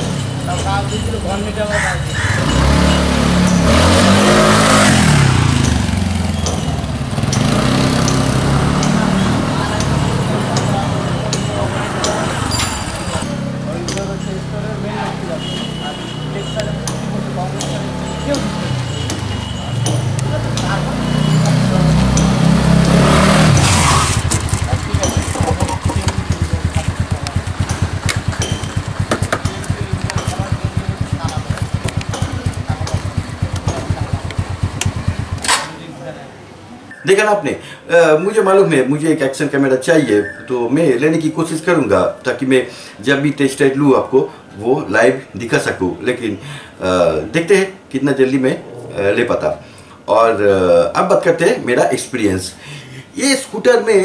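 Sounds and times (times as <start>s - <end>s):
scooter engine accelerating: 0.0s - 35.9s.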